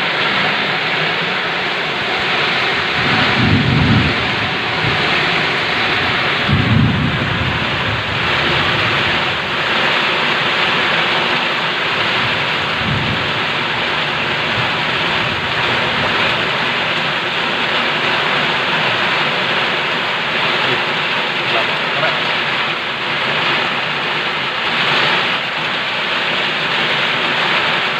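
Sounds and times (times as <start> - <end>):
low thunder rumbles: 0.0 - 19.2
heavy rain hiss: 0.0 - 27.9.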